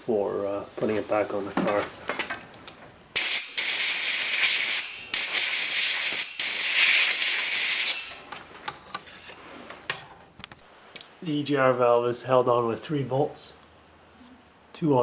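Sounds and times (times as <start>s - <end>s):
compressed air hissing from blow gun: 3.2s - 8.2s.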